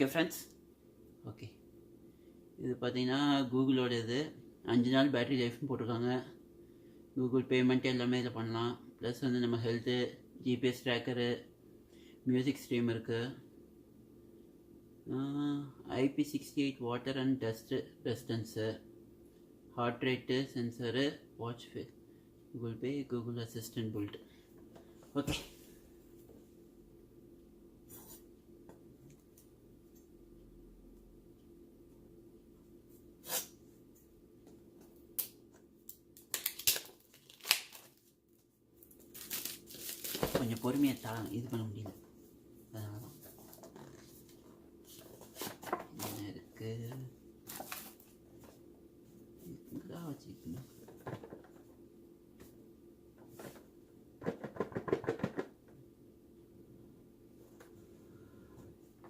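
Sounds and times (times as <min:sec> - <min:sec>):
low steady hum: 0:00.0 - 0:59.0
packaging rustling and tearing: 0:36.2 - 0:38.1, 0:38.8 - 0:41.5, 0:47.5 - 0:48.1.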